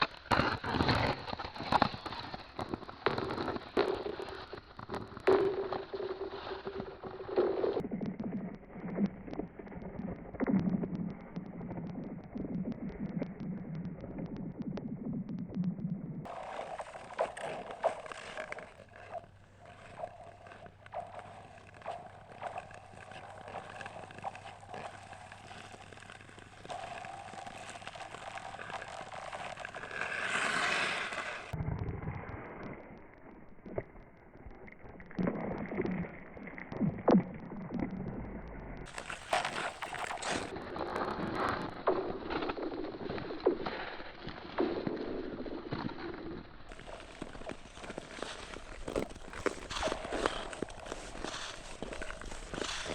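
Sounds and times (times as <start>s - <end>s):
skate blades gliding on ice: 0.0s - 52.9s
thin ice ringing and ticking: 0.2s - 31.9s, 41.4s - 52.9s
small sharp clicks: 7.8s - 16.3s.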